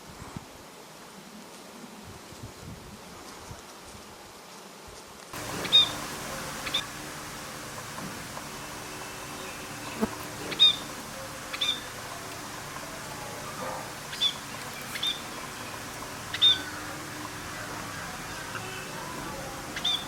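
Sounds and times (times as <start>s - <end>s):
background hiss: 0.0s - 20.0s
bird chirping: 5.4s - 6.9s, 8.6s - 20.0s.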